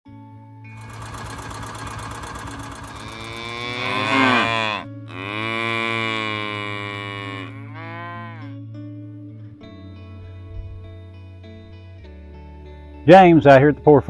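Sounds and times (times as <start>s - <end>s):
steady low hum: 0.8s - 4.8s
cow mooing: 2.6s - 8.5s.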